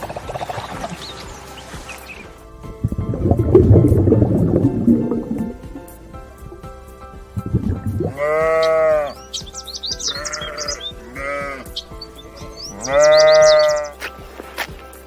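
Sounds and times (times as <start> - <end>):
background music: 0.0 - 15.0
livestock bleating: 8.0 - 9.2, 9.9 - 14.0.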